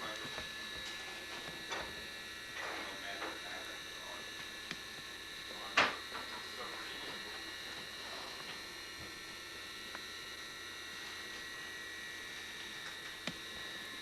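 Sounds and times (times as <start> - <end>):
electrical hum with high whine: 0.0 - 14.0.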